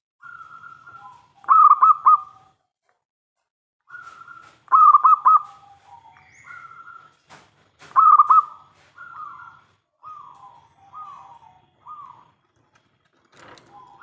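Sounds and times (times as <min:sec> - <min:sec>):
dove soft long coos: 0:08.0 - 0:12.5.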